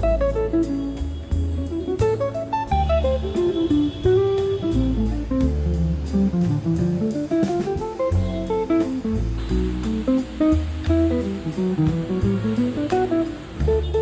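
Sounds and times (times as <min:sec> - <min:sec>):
jazzy guitar music with bass: 0:00.0 - 0:14.0.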